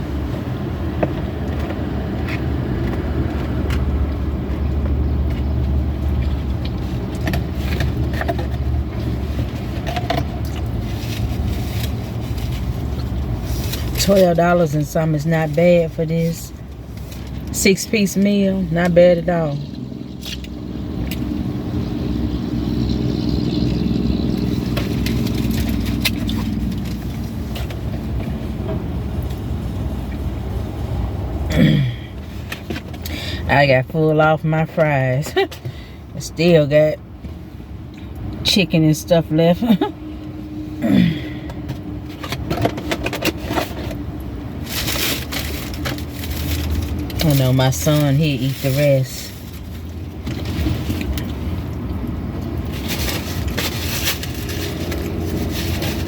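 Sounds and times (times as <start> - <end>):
car engine idling: 0.0 - 36.8.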